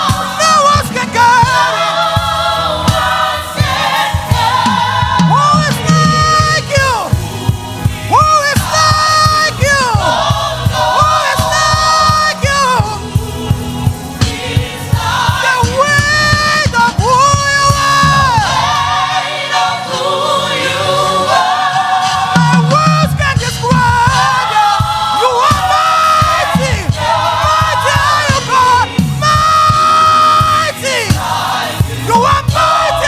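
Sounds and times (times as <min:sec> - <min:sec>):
steady low beat: 0:00.0 - 0:19.1, 0:21.3 - 0:33.0
gospel choir singing: 0:00.0 - 0:33.0.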